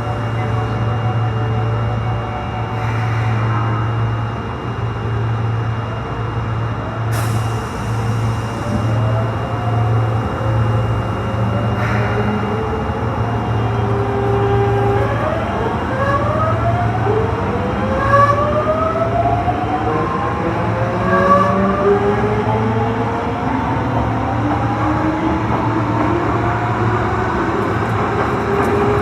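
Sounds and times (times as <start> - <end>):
steady low hum: 0.0 - 20.9
train traction motors whining: 0.0 - 29.0
air hiss: 2.7 - 4.3.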